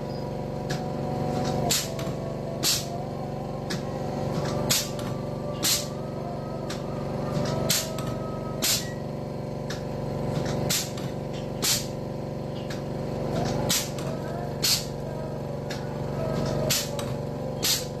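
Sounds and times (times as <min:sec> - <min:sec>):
machine motor hum: 0:00.0 - 0:18.0
sharp wire cutting strokes: 0:10.4 - 0:11.0, 0:11.6 - 0:11.9, 0:13.7 - 0:14.0, 0:14.6 - 0:14.9, 0:17.6 - 0:17.9.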